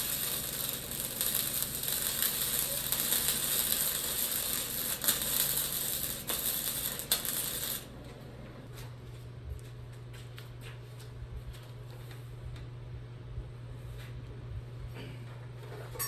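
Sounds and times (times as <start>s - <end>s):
arc welder crackling: 0.0s - 8.7s.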